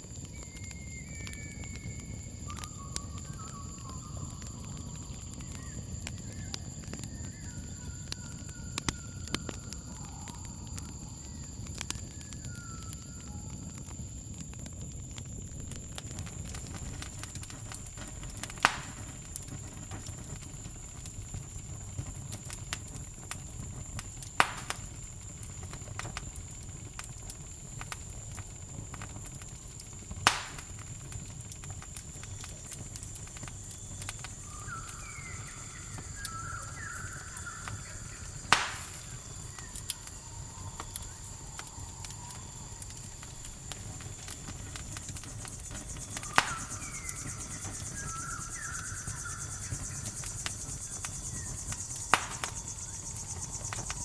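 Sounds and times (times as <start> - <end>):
campfire crackling: 0.0 - 54.0
crickets trilling: 0.0 - 54.0
fire pops: 0.0 - 54.0
short chirping calls: 34.1 - 42.8, 45.4 - 54.0.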